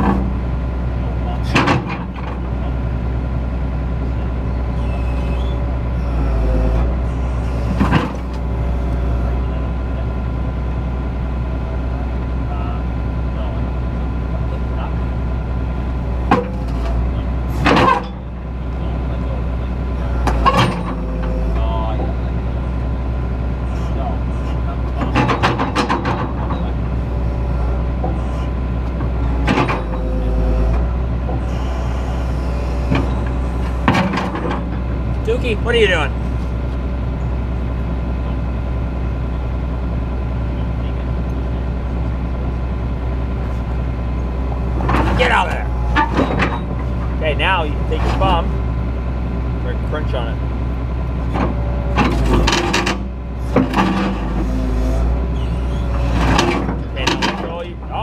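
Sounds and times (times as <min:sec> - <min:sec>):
excavator engine running: 0:00.0 - 0:58.0
faint squeals: 0:04.5 - 0:09.8, 0:23.6 - 0:24.8, 0:26.5 - 0:34.8, 0:44.6 - 0:47.0, 0:53.4 - 0:57.0.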